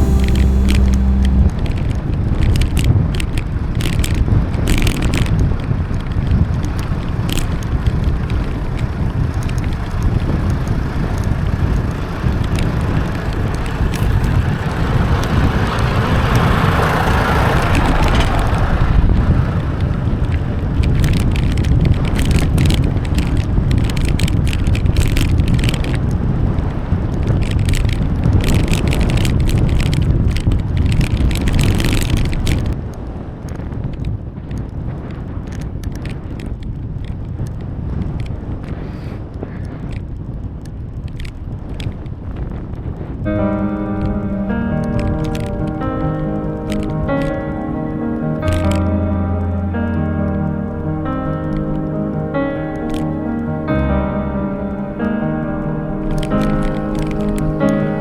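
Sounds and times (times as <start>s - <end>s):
tyre and road noise: 0.0s - 58.0s
wind buffeting microphone: 0.0s - 58.0s
clicks: 43.3s - 58.0s.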